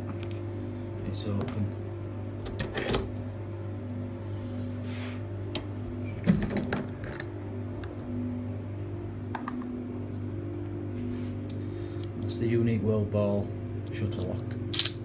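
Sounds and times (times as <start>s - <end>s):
steady low hum: 0.0s - 15.0s
metallic clicks and clinks: 14.7s - 15.0s.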